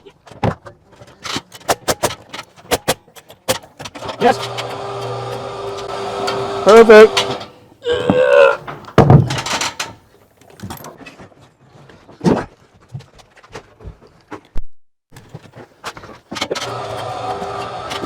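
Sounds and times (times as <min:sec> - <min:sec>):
wooden knocks and thuds: 0:08.0 - 0:09.7.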